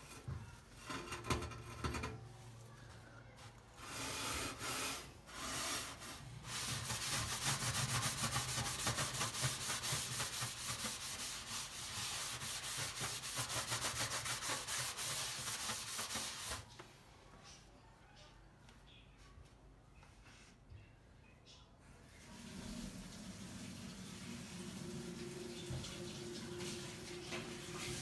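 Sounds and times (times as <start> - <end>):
brush scrubbing hard: 3.8 - 16.6.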